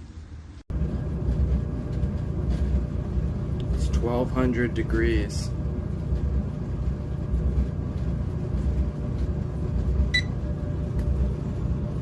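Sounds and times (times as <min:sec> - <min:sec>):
clothes dryer rumbling: 0:00.0 - 0:12.0.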